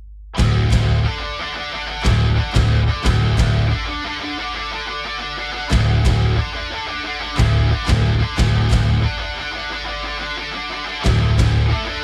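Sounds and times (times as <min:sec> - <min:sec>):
heavy bass and drum hits: 0:00.4 - 0:04.1, 0:05.7 - 0:06.8, 0:07.4 - 0:09.4, 0:11.0 - 0:12.0
rock music with guitar: 0:00.4 - 0:12.0.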